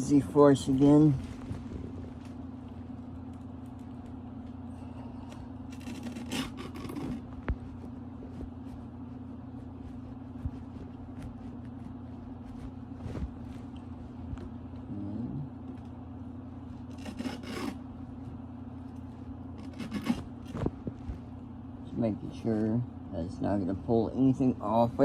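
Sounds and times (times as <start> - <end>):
steady low hum: 0.0 - 25.0
velcro rustle: 5.7 - 14.5, 18.8 - 21.2.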